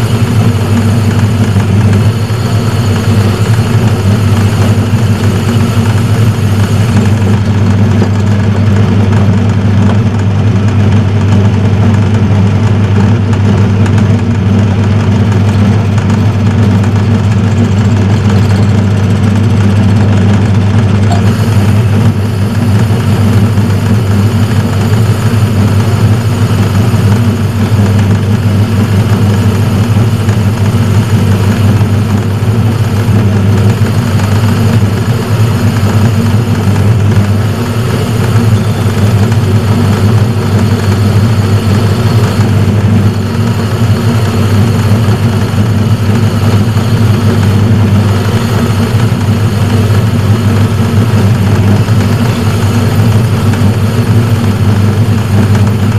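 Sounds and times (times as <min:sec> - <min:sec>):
metal lathe humming: 0:00.0 - 0:55.9.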